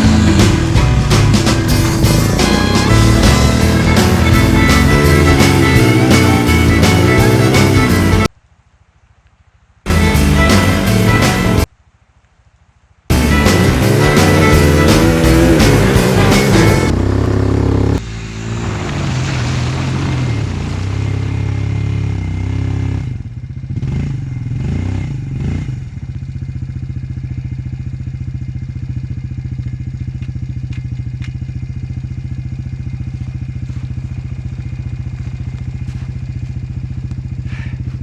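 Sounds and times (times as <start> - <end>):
atv engine revving: 0.0 - 8.3, 9.9 - 11.7, 13.1 - 38.0
background music: 0.0 - 8.3, 9.9 - 11.7, 13.1 - 16.9.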